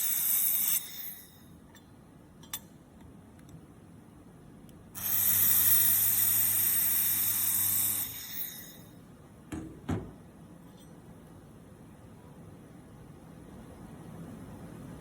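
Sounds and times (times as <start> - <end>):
laser welder hissing: 5.0 - 8.9.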